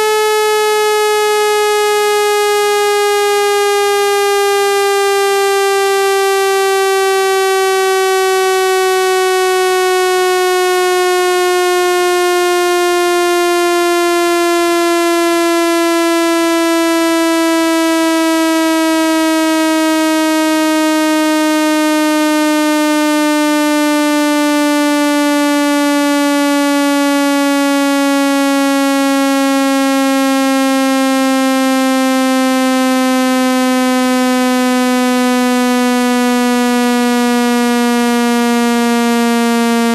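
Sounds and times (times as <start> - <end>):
buzzy synthesized tone gliding down: 31.2 - 39.9.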